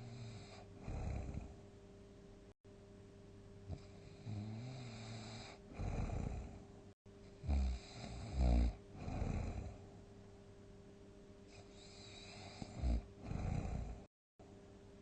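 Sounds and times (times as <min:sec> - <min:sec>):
person snoring: 0:00.0 - 0:01.6, 0:03.7 - 0:06.6, 0:07.4 - 0:09.8, 0:11.5 - 0:14.1.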